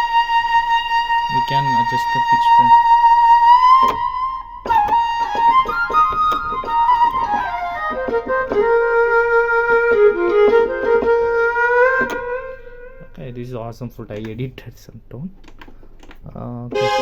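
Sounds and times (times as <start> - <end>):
keyboard flute melody: 0.0 - 13.2, 16.7 - 17.0.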